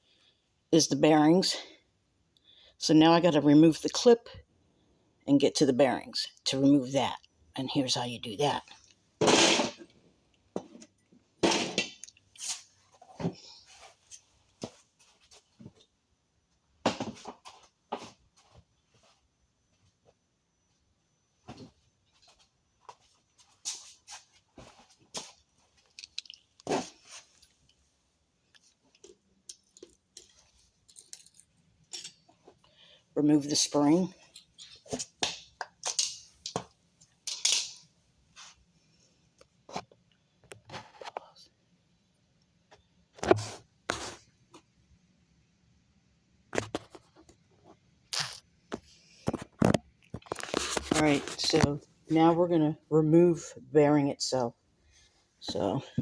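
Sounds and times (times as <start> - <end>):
metal clicks and scrapes of pliers: 30.9 - 32.2, 37.3 - 37.8.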